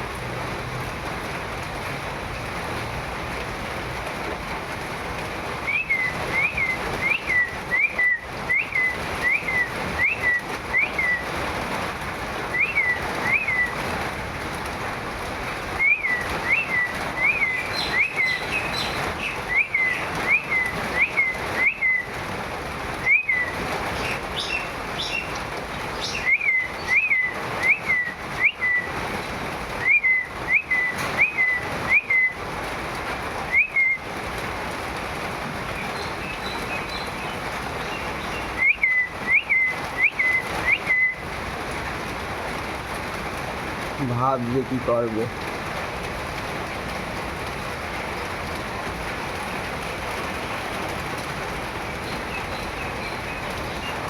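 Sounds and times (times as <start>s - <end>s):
steady rain: 0.0s - 54.0s
bird whistled call: 5.6s - 11.3s, 12.5s - 13.8s, 15.8s - 22.2s, 23.0s - 29.0s, 29.8s - 32.4s, 33.5s - 34.1s, 36.0s - 41.3s.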